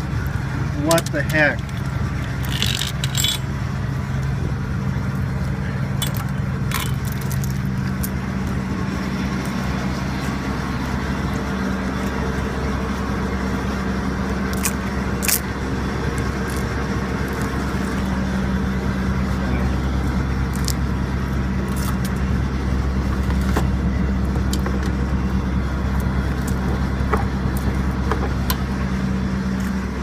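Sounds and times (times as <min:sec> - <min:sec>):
diesel engine idling: 0:00.0 - 0:30.0
metallic clinks of chain: 0:02.4 - 0:03.5.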